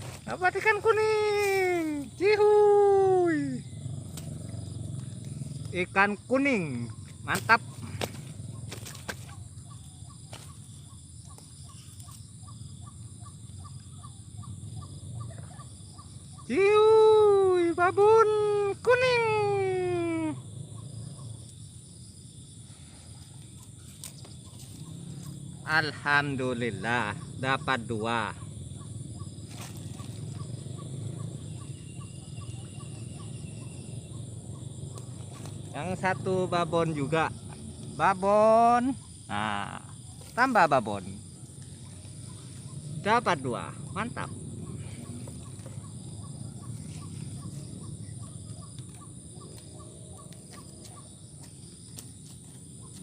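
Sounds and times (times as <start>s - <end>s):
high insect drone: 0.0s - 53.0s
small animal chirping: 3.1s - 16.6s, 23.3s - 26.1s, 26.8s - 38.2s, 38.9s - 53.0s.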